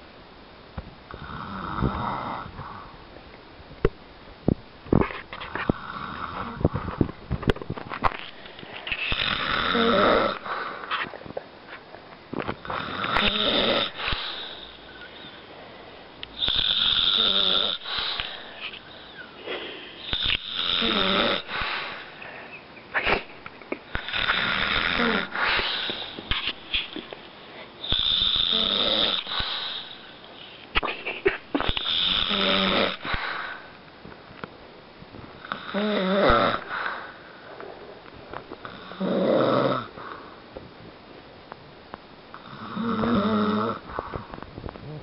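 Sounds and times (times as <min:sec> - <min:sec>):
man snoring: 0:01.1 - 0:02.8, 0:05.6 - 0:06.7, 0:09.0 - 0:10.5, 0:12.6 - 0:15.4, 0:16.4 - 0:19.3, 0:20.0 - 0:22.1, 0:23.9 - 0:26.4, 0:27.8 - 0:30.0, 0:31.7 - 0:33.2, 0:35.4 - 0:37.0, 0:38.6 - 0:40.0, 0:42.4 - 0:43.9
quiet breathing: 0:01.1 - 0:03.1, 0:08.1 - 0:23.0, 0:23.9 - 0:30.8, 0:31.6 - 0:33.9, 0:36.6 - 0:40.6, 0:42.3 - 0:45.0.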